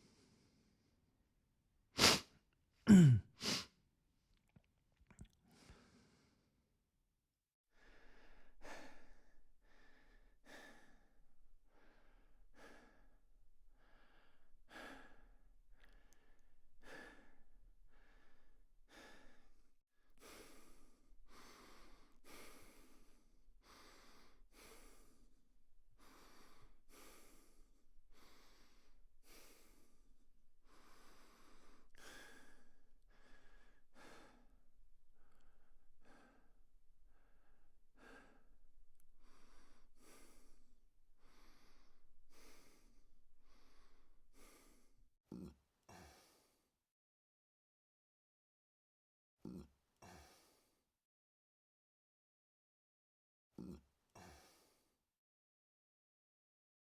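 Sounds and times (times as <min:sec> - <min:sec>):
person breathing close up: 0:00.0 - 0:00.9, 0:02.9 - 0:03.7, 0:05.5 - 0:06.6, 0:07.8 - 0:45.0.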